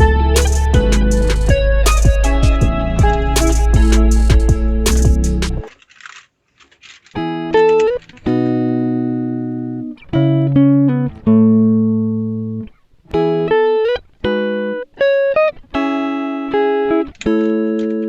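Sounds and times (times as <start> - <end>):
plucked chords ringing: 0.0 - 5.6.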